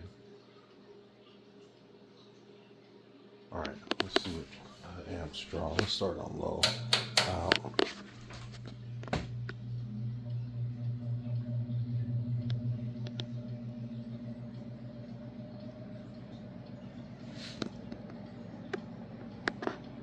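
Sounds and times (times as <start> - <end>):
box fan motor hum: 4.0 - 20.0.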